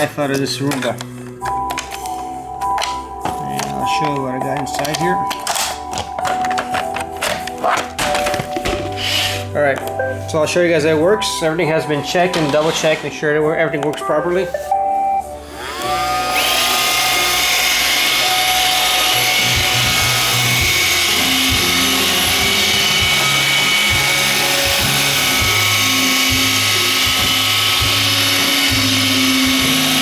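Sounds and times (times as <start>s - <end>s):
robot vacuum motor whine: 15.4s - 30.0s.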